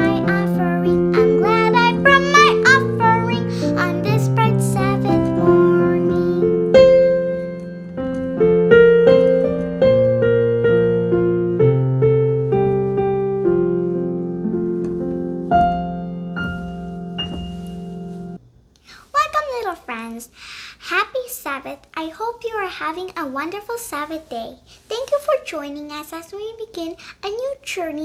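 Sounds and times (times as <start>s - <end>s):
piano melody: 0.0s - 18.4s.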